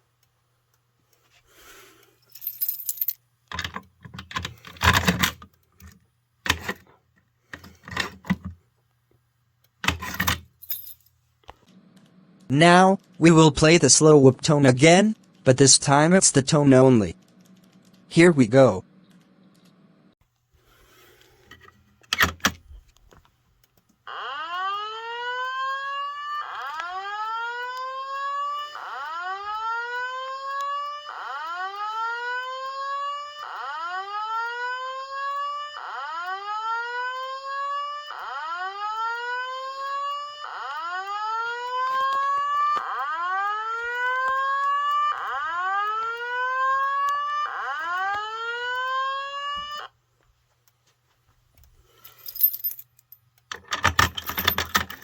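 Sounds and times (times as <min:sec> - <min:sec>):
fire alarm whoop tone: 0:24.1 - 0:49.9.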